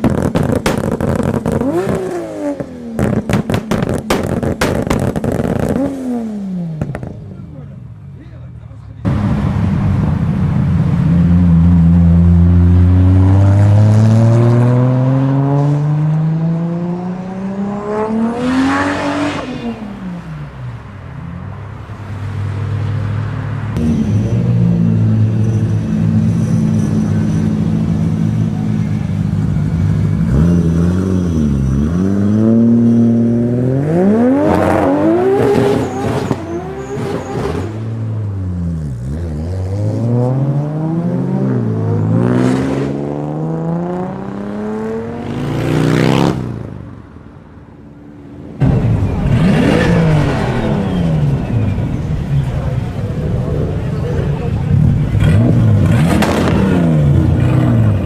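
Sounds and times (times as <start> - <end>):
car engine accelerating hard: 23.7 - 46.4, 48.6 - 58.0.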